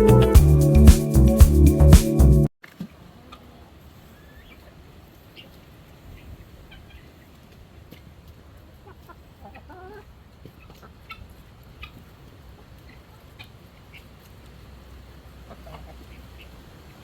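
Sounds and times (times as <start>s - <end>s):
chickens clucking: 8.7s - 14.4s, 15.4s - 17.0s.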